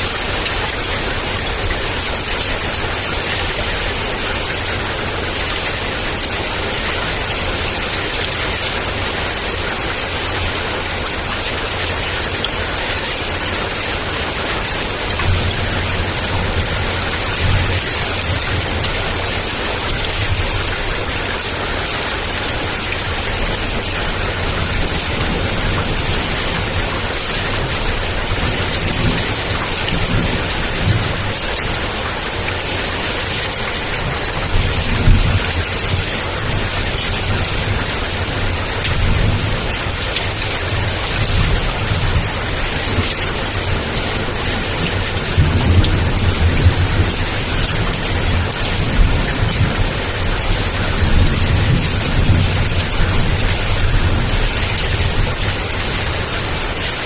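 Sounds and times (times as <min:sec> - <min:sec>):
heavy rain: 0:00.0 - 0:57.0
thunder rumbling: 0:11.6 - 0:56.9.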